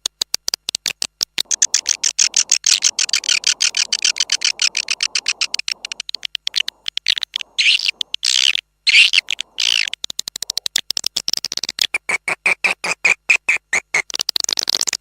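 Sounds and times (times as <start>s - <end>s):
swiftlet clicking chirps: 0.0s - 15.0s
buzzy chirps: 1.4s - 10.6s.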